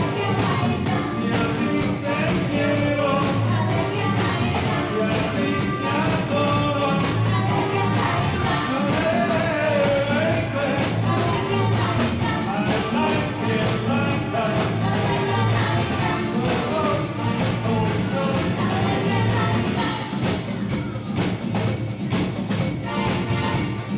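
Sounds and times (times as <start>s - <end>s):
person singing: 0.0s - 21.0s
live band playing rock and roll: 0.0s - 23.9s
steady drum beat: 0.0s - 23.9s.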